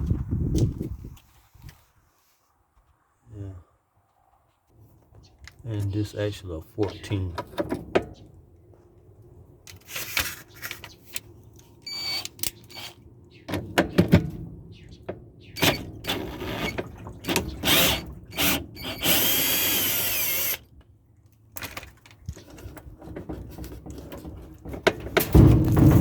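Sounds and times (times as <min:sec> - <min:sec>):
power drill spinning out bolt: 0:11.9 - 0:13.0, 0:15.6 - 0:20.6.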